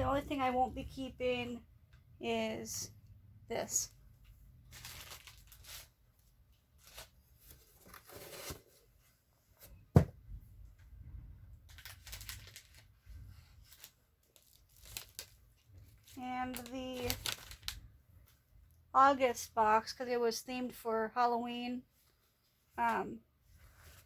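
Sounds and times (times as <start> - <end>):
packaging crinkling and tearing: 4.7 - 6.0, 11.7 - 13.0, 13.6 - 17.9.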